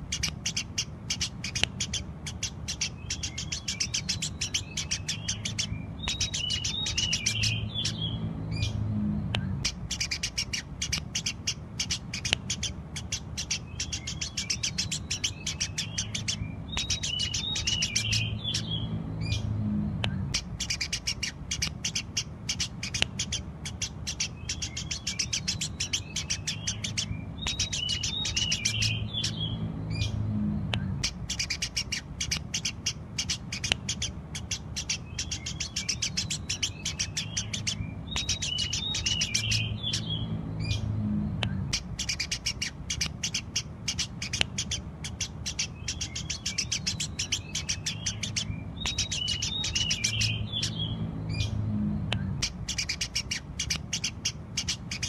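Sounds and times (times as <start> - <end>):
sparrows chirping: 0.0 - 55.0
twittering bird notes: 0.0 - 55.0
low hum: 1.8 - 43.8, 47.2 - 53.6.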